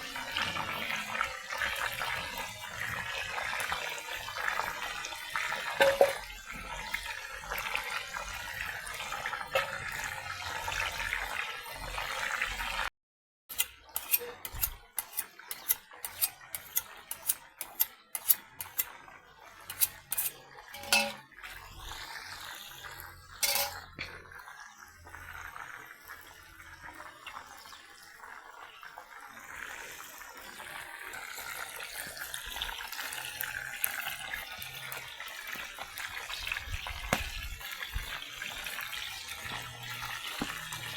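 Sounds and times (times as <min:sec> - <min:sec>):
water running: 0:00.0 - 0:12.9, 0:14.0 - 0:24.4, 0:25.2 - 0:40.9
dishes and cutlery clattering: 0:05.8 - 0:06.2, 0:19.7 - 0:21.2, 0:23.4 - 0:24.0.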